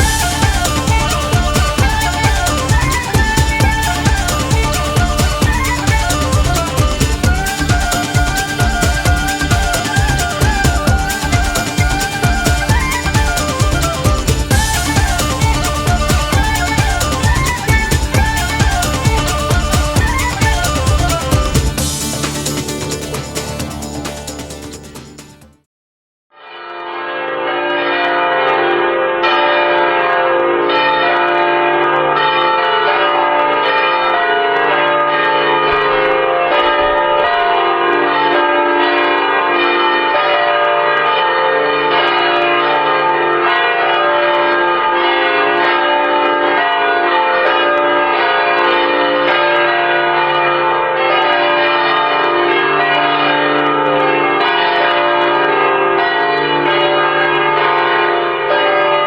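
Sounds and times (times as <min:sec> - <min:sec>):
church bells pealing: 0:00.0 - 0:03.2, 0:26.4 - 0:59.0.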